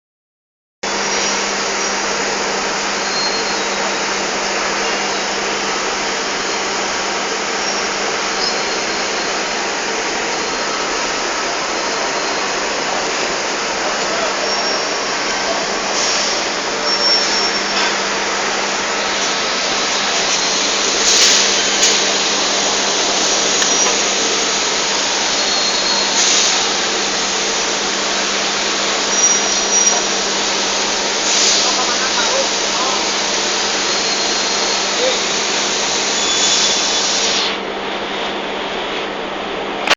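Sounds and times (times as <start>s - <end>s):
machinery whirring: 0.9s - 37.8s.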